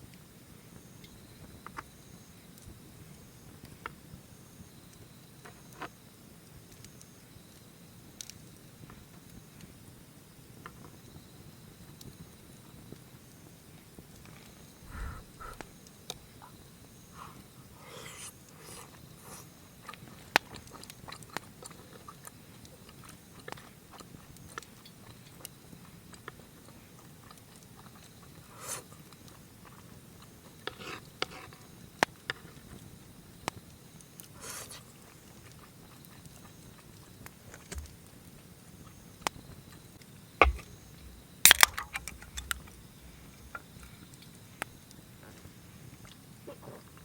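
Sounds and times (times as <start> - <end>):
crunching and chewing food: 17.3 - 47.0
campfire crackling and popping: 19.9 - 46.4.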